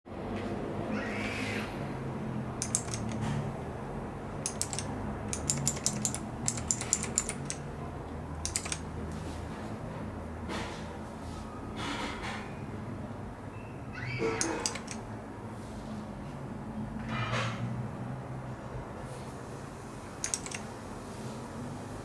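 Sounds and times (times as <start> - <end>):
keyboard keys clicking: 2.6 - 3.4, 4.4 - 7.7, 8.4 - 8.9, 14.4 - 15.1, 20.2 - 20.7.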